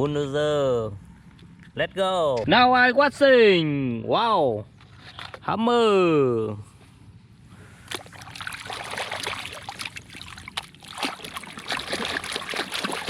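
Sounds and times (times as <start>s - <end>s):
shallow water splashing: 7.7s - 13.0s.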